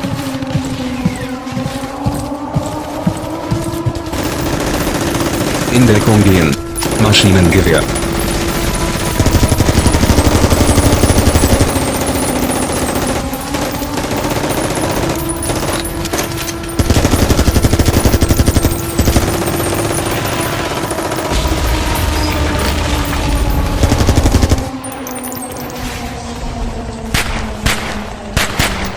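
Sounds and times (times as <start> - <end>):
steady low drone: 0.0 - 28.9
automatic machine-gun fire: 4.1 - 24.8.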